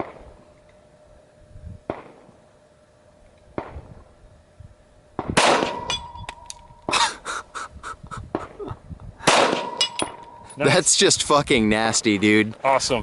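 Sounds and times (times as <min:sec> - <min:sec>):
steady ringing tone: 0:04.4 - 0:06.9, 0:09.6 - 0:11.0
pistol shots: 0:05.2 - 0:06.0, 0:09.2 - 0:10.2.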